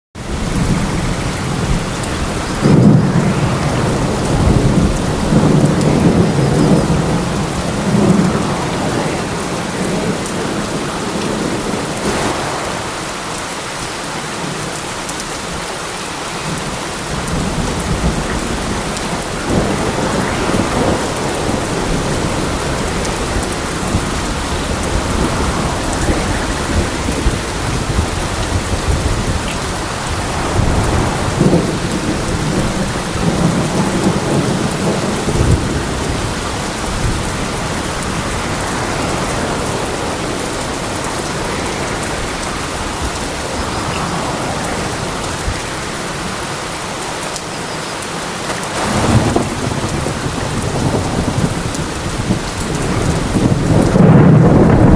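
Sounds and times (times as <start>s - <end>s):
heavy rain: 0.2s - 54.9s
thunder rumbling: 0.2s - 54.9s.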